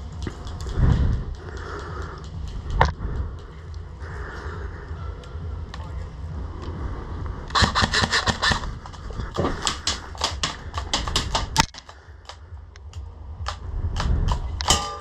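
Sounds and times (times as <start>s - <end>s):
loud crack: 7.5s - 8.8s
airsoft guns firing: 7.5s - 12.4s.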